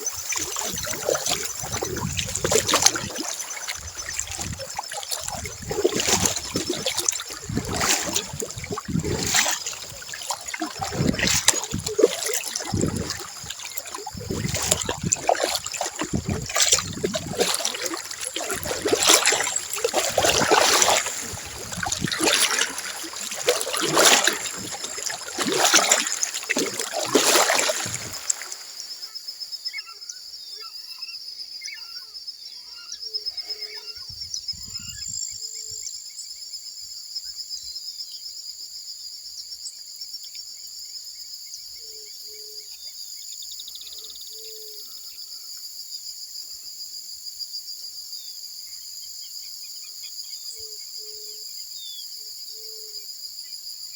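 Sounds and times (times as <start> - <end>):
high insect trill: 0.0 - 28.9
paddle strokes splashing in water: 0.0 - 29.0.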